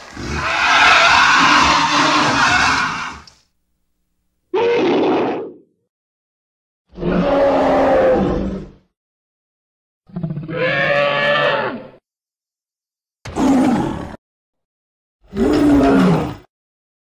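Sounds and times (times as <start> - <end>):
dragon roars: 0.0 - 3.3, 6.9 - 8.8, 15.3 - 16.5.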